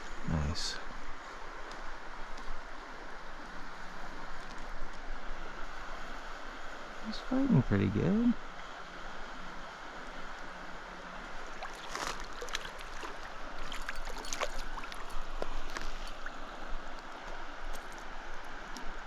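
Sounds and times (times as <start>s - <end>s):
stream running: 0.0s - 19.0s
short sharp splashes: 11.5s - 15.1s.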